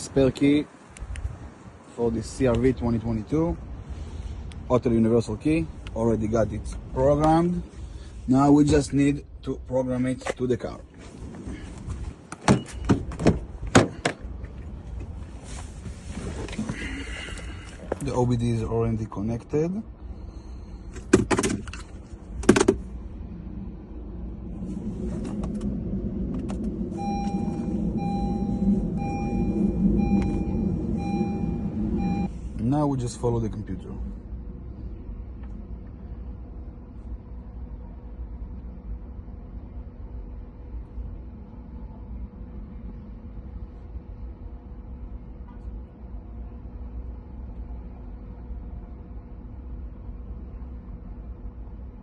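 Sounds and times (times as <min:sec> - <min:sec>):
steady low rumble: 0:00.0 - 0:12.3, 0:13.0 - 0:52.0
faint constant hum: 0:00.0 - 0:52.0
repeating electronic beep: 0:27.0 - 0:32.3.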